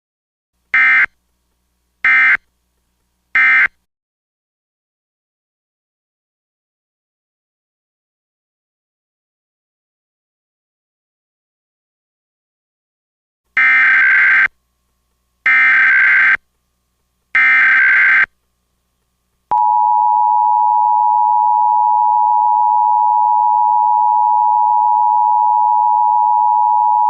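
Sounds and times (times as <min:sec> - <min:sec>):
steady attention tone: 0:19.5 - 0:27.0.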